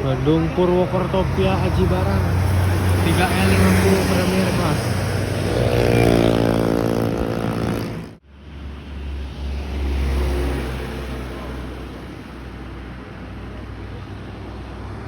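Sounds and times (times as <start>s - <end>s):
bus engine running: 0.0s - 5.8s.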